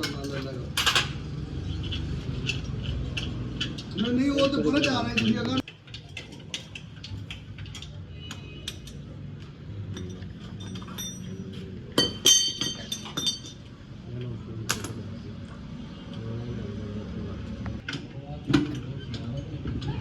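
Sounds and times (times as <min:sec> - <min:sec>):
metal objects clinking: 0:00.0 - 0:08.0, 0:09.9 - 0:13.7.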